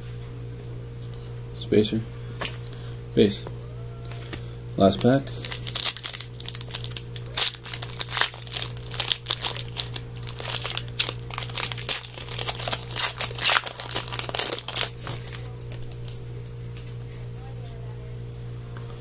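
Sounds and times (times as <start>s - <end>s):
card wrapper tearing and crinkling: 4.8s - 16.2s.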